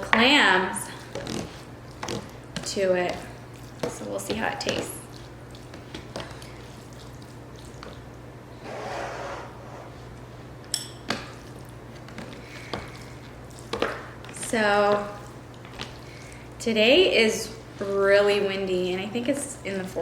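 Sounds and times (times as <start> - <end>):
steady low hum: 0.0 - 20.0
wet squishy noodles handled: 0.4 - 8.3, 11.3 - 16.6.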